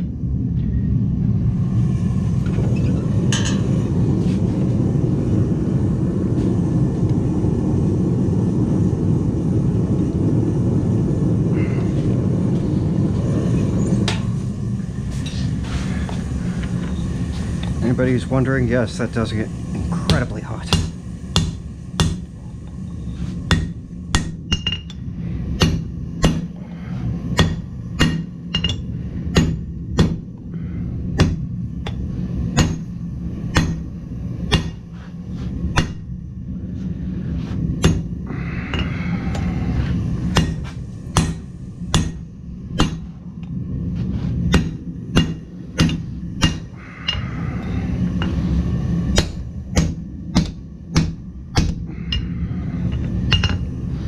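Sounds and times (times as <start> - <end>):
steady low hum: 0.0 - 54.0
hammer striking steel on anvil: 20.1 - 22.3, 23.5 - 25.0, 25.6 - 26.5, 27.4 - 30.2, 31.2 - 32.0, 32.6 - 32.9, 33.5 - 33.9, 34.5 - 34.8, 35.7 - 36.1, 37.8 - 38.1, 40.3 - 43.1, 44.5 - 47.3, 49.1 - 53.7.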